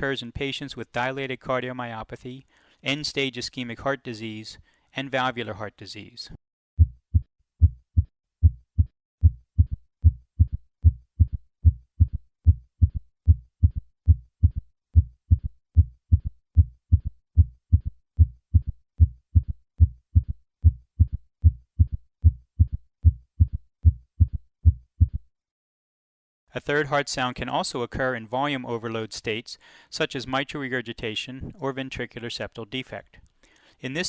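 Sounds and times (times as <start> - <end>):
heartbeat through a stethoscope: 6.8 - 25.3.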